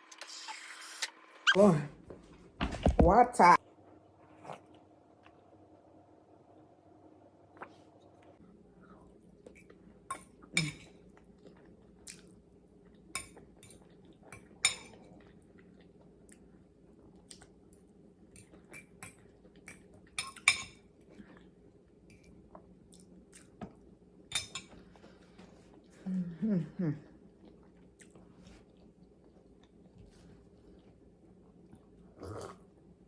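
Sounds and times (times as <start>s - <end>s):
faint steady hum: 1.3s - 33.0s
quiet chewing: 4.2s - 5.6s, 7.5s - 23.9s, 27.0s - 32.9s
cutlery clinking on a plate: 14.4s - 15.0s, 20.2s - 20.8s, 24.3s - 24.8s.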